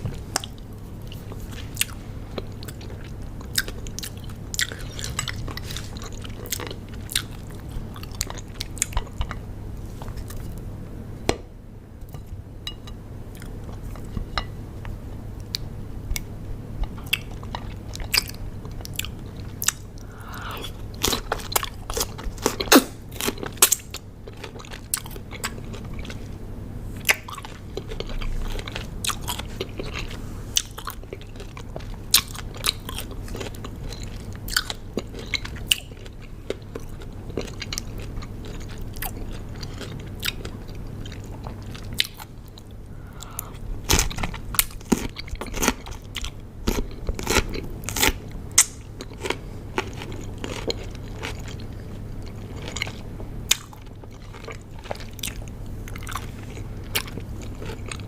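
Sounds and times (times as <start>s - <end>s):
cucumber crunching while chewed: 27.0s - 58.0s.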